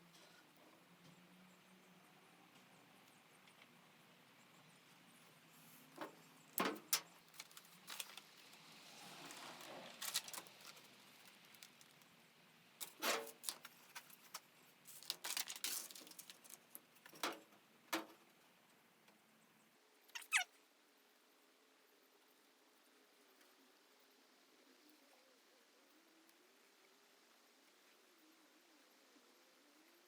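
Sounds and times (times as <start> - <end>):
soft rustle: 7.0 - 12.2, 12.8 - 17.2.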